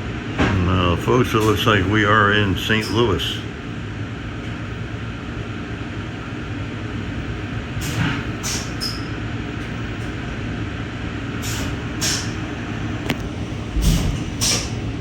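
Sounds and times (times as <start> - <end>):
train rumbling: 10.9 - 15.0.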